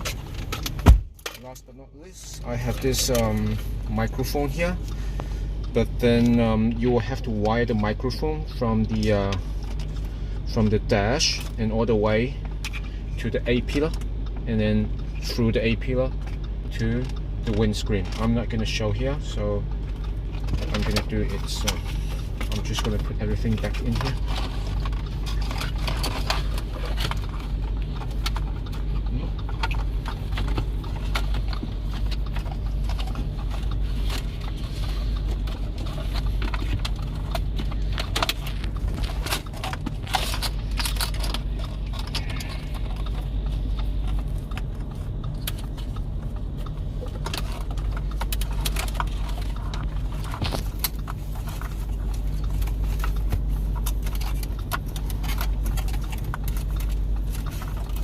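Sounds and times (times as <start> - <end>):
low hum: 0.0 - 58.0
plastic clicks and scrapes: 19.9 - 58.0.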